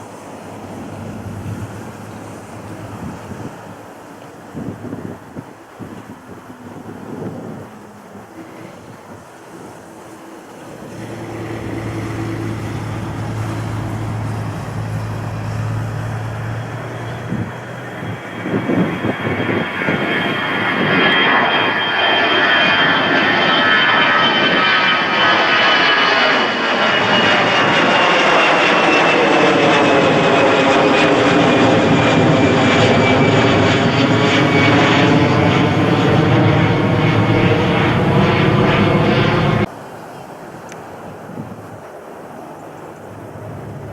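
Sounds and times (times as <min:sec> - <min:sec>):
engine drone: 0:00.0 - 0:03.6, 0:10.0 - 0:39.7, 0:42.9 - 0:43.9
broad rushing noise: 0:00.0 - 0:21.8, 0:24.4 - 0:43.9.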